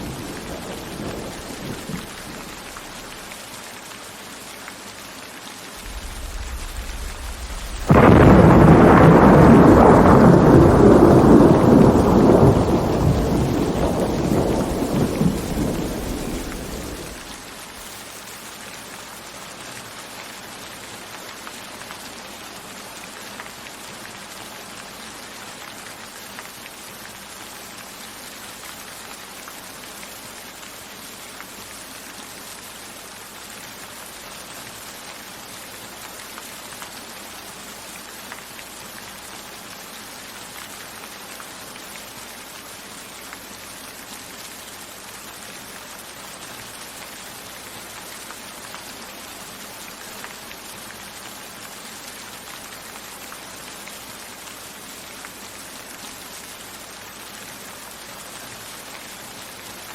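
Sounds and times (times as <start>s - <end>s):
steady rain falling: 0.0s - 59.9s
raindrops ticking: 0.3s - 3.4s, 5.8s - 17.4s
low thunder rumble: 5.8s - 17.4s.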